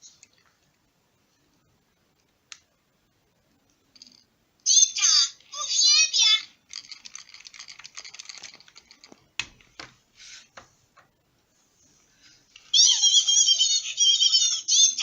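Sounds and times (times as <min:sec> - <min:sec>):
toy mechanism clicking: 0:06.7 - 0:09.2
warbling electronic toy voice: 0:12.7 - 0:15.0.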